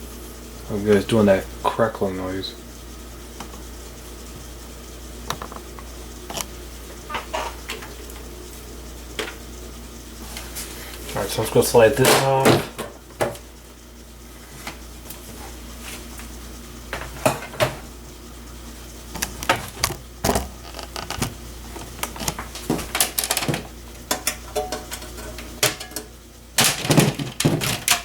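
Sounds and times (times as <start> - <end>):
metal computer panel clattering: 19.2 - 28.0.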